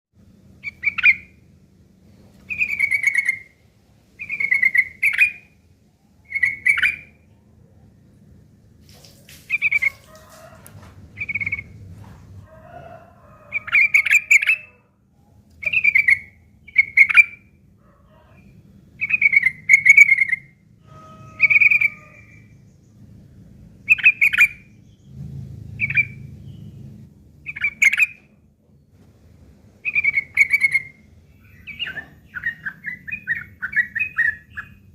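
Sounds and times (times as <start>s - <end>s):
rough chattering bird calls: 0.5s - 1.5s, 2.4s - 3.6s, 4.2s - 5.6s, 6.2s - 7.2s, 9.0s - 11.8s, 23.8s - 26.8s, 27.4s - 28.3s, 29.8s - 34.9s.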